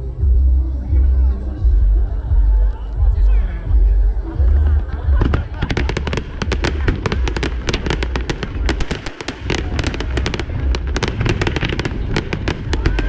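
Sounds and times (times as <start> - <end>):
rumble of fireworks booms: 0.0 - 13.0
fireworks crackling pops: 4.7 - 13.0.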